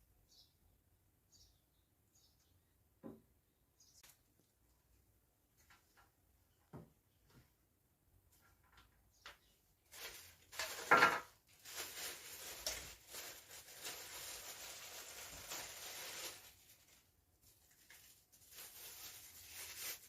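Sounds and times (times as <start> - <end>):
plastic parts rustling and knocking: 8.3 - 16.5.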